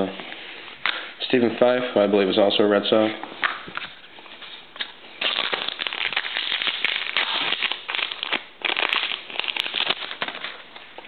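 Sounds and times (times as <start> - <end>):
card pack wrapper crinkling: 4.8 - 11.0.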